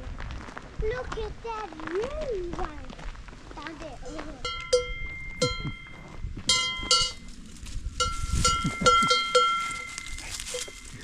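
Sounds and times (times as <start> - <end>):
cowbells clanking: 4.1 - 7.4, 8.0 - 11.0.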